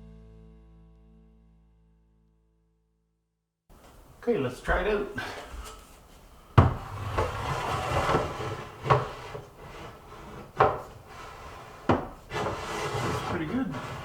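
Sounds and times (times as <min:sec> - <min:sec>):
wood scraping and rubbing: 0:04.7 - 0:14.0
wooden knocks: 0:06.6 - 0:14.0.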